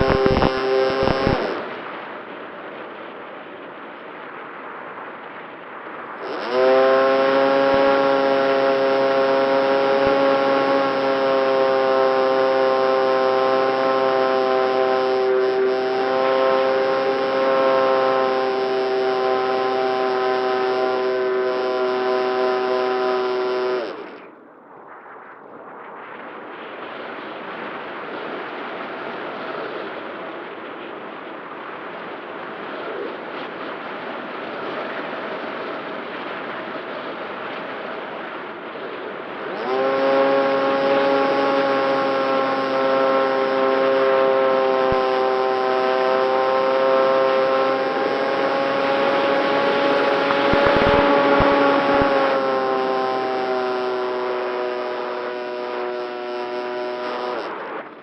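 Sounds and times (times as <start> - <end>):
electric motor propeller whine: 0.0 - 2.0, 6.2 - 24.3, 39.3 - 58.0
wind hiss: 0.0 - 58.0
wind rushing: 23.8 - 29.6, 47.5 - 52.5.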